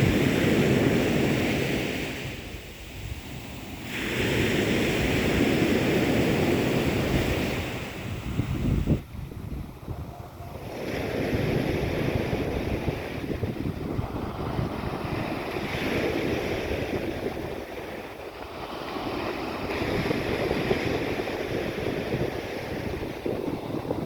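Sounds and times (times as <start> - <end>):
sea waves washing on shore: 0.0 - 24.0
wind buffeting microphone: 0.0 - 24.0.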